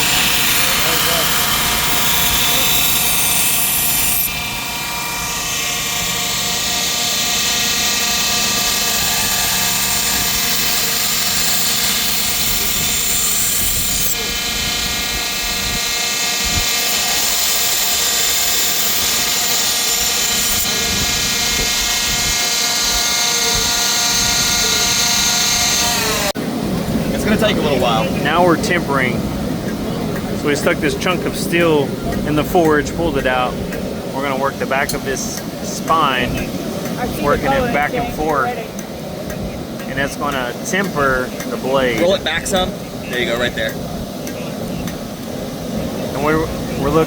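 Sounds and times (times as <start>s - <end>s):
belt grinder motor hum: 0.0s - 26.4s
steel hissing on grinder belt: 0.0s - 26.4s.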